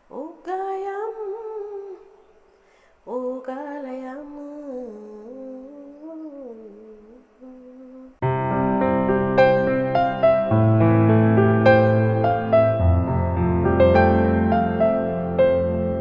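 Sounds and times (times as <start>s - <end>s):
woman chanting unaccompanied: 0.0s - 2.3s, 3.1s - 8.2s
keyboard music with piano chords: 8.2s - 16.0s.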